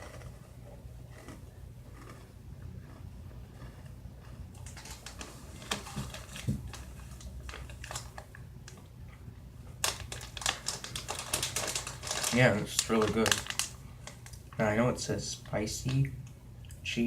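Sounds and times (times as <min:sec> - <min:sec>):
person chewing crunchy snack: 0:00.0 - 0:05.6.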